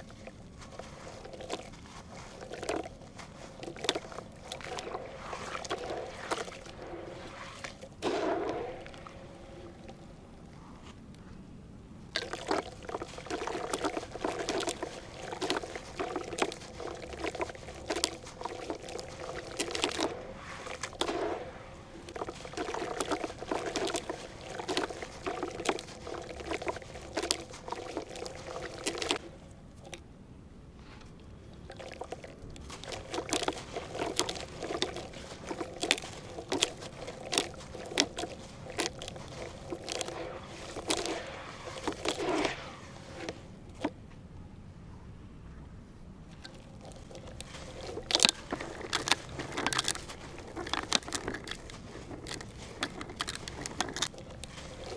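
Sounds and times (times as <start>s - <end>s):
water pouring: 0.0s - 10.1s, 12.2s - 29.2s, 31.7s - 43.9s, 46.4s - 54.9s
dry pieces crunching and crackling: 12.2s - 29.2s, 31.8s - 43.9s, 46.4s - 54.9s.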